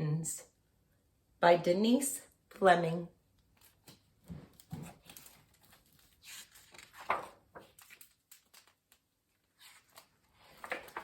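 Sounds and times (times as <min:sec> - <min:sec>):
book pages rustling: 0:03.4 - 0:11.0.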